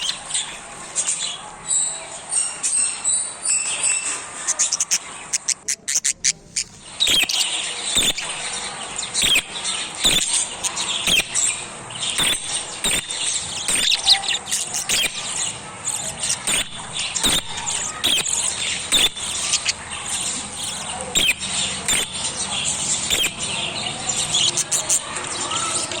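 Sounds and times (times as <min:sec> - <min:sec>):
young parrots chirping: 0:00.0 - 0:26.0.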